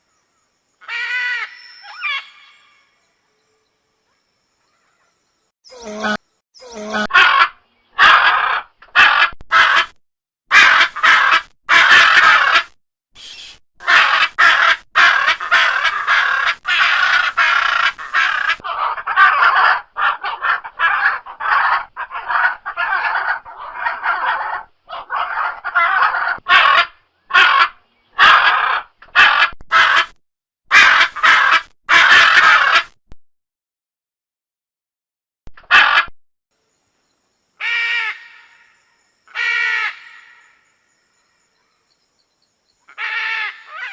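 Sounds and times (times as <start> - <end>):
macaws squawking: 5.8 - 12.7, 13.4 - 32.9, 35.6 - 36.1, 42.9 - 43.9.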